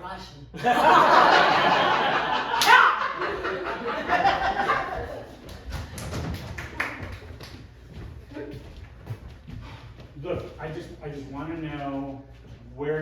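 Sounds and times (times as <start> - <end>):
audience laughing: 0.6 - 5.7.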